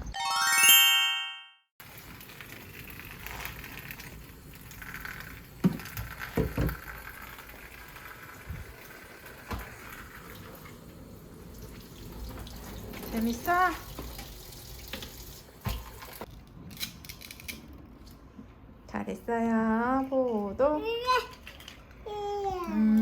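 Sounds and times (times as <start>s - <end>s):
rising chime: 0.1s - 1.6s.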